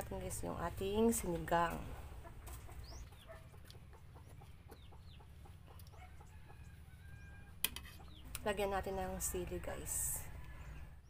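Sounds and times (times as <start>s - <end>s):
chickens clucking: 0.8s - 10.9s.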